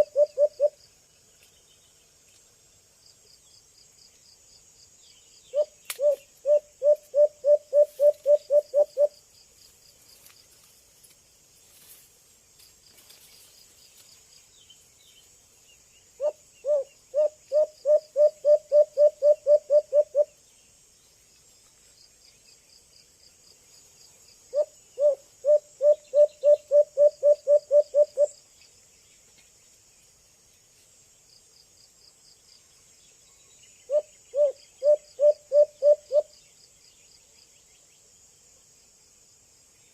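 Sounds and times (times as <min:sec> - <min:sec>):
dove low hooting: 0:00.0 - 0:00.8, 0:05.5 - 0:09.2, 0:16.2 - 0:20.4, 0:24.5 - 0:28.4, 0:33.9 - 0:36.3
insects trilling: 0:00.0 - 0:39.9.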